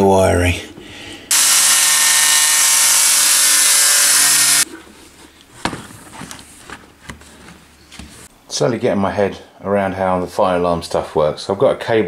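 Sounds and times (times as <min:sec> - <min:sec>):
power tool running: 0:01.3 - 0:04.6.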